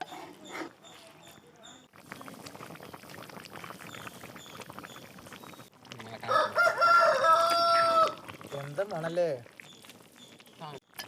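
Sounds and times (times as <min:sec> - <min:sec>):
pot bubbling: 0:00.0 - 0:11.0
rooster crowing: 0:06.2 - 0:08.3.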